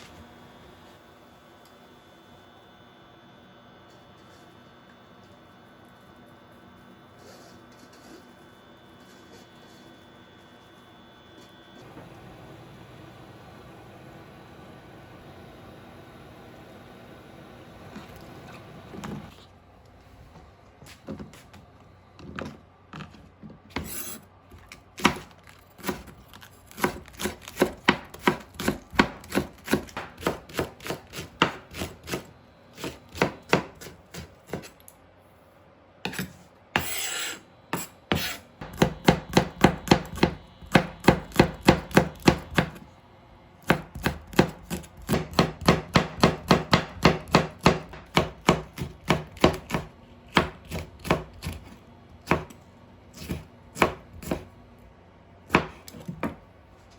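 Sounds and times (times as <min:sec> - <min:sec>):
knife scraping cutting board: 0:07.1 - 0:10.1, 0:23.7 - 0:24.3, 0:36.1 - 0:38.5
knife chopping on cutting board: 0:26.8 - 0:34.8, 0:36.1 - 0:42.8, 0:43.7 - 0:52.6, 0:53.2 - 0:54.5, 0:55.5 - 0:56.4.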